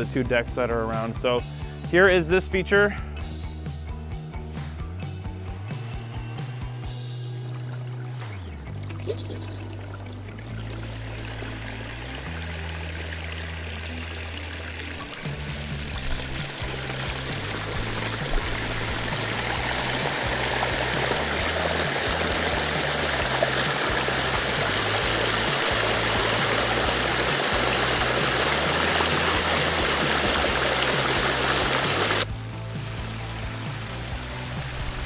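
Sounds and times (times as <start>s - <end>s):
background music with bass: 0.0s - 35.0s
water splashing over stone: 15.1s - 35.0s.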